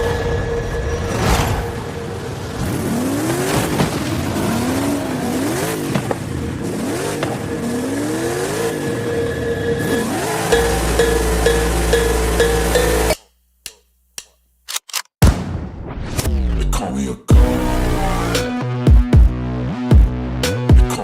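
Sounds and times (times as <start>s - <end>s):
music with a beat: 10.5s - 13.8s, 18.2s - 21.0s.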